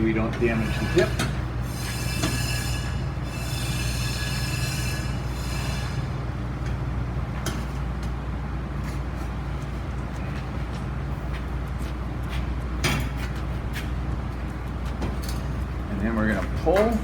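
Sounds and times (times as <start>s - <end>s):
steady low hum: 0.0s - 17.0s
metal rods squealing in rubber: 0.4s - 6.2s.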